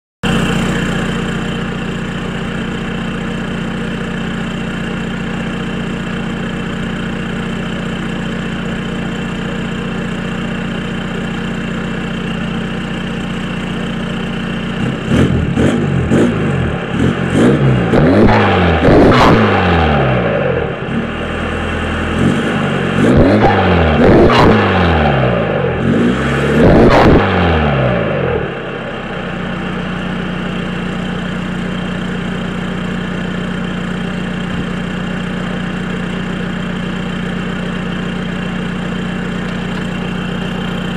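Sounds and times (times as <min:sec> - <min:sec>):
diesel engine revving and idling: 0:00.2 - 0:40.9.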